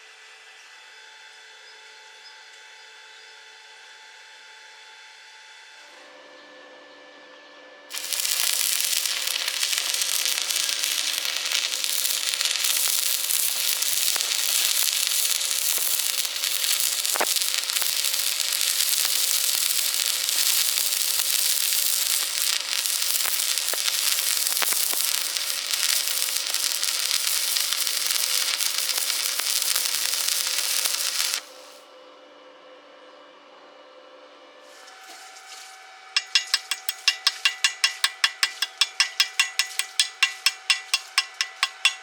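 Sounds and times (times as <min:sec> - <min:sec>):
small pops: 0:07.9 - 0:31.4, 0:36.2 - 0:42.0
electric welding arc crackling: 0:07.9 - 0:31.8, 0:36.2 - 0:42.0.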